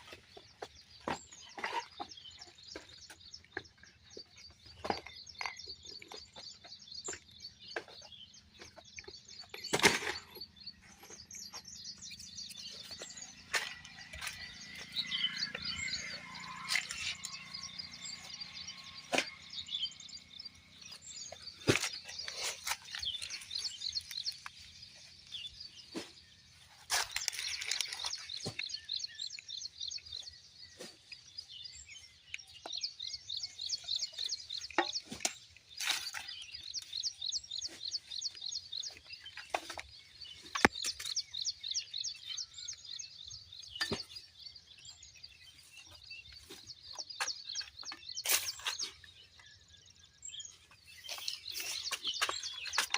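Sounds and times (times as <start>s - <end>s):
birds chirping in trills: 0.0s - 52.9s.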